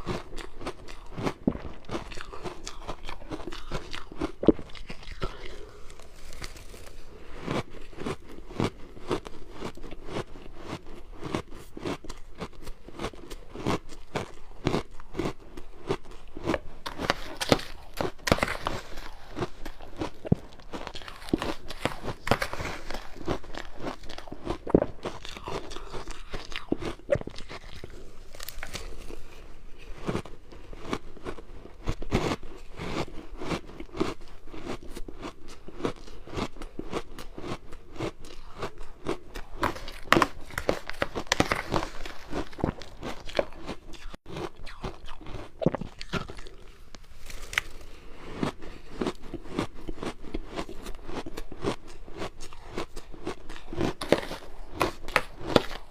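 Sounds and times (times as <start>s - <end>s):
ice being chewed: 0.0s - 55.9s.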